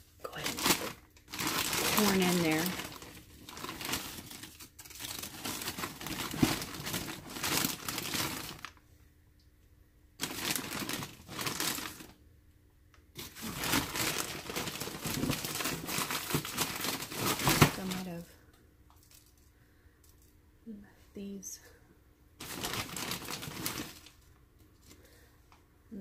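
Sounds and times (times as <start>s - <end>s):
corn husks rustling and tearing: 0.3s - 8.8s, 10.2s - 12.2s, 13.2s - 18.2s, 22.4s - 25.0s.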